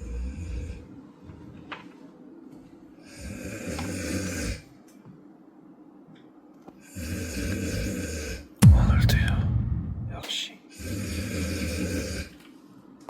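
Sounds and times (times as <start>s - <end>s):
man snoring: 0.0s - 0.9s, 3.0s - 4.7s, 6.8s - 8.5s, 10.7s - 12.4s
quiet breathing: 0.0s - 2.2s, 2.8s - 4.8s.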